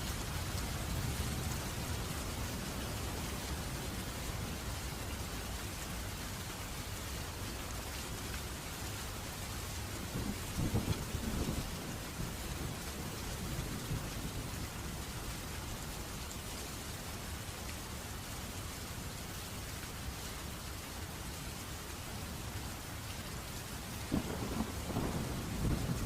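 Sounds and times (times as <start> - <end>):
steady rain falling: 0.0 - 26.0
thunder rumbling: 10.1 - 14.6, 24.1 - 26.0.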